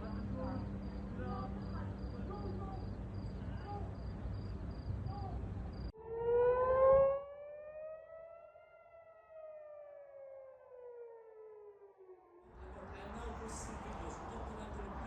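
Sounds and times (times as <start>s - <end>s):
air-raid siren wailing: 6.0s - 12.6s.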